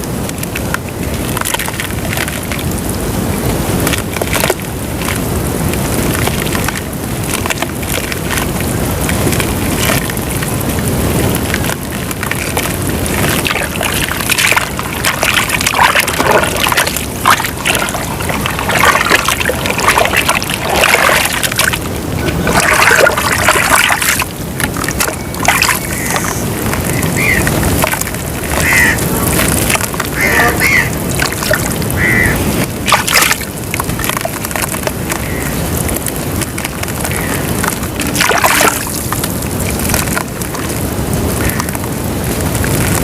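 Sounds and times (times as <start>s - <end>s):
water sloshing and bubbling: 0.0s - 43.0s.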